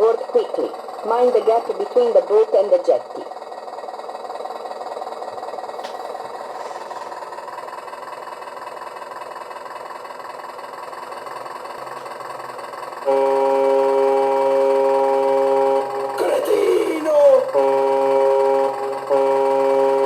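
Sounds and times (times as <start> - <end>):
steady running hum: 0.0 - 20.0
electronic boat horn chord: 13.0 - 20.0.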